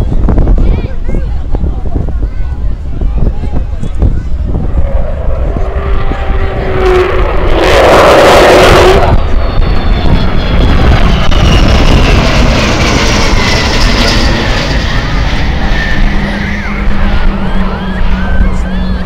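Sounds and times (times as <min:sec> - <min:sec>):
jet bomber flying past: 0:03.9 - 0:19.0.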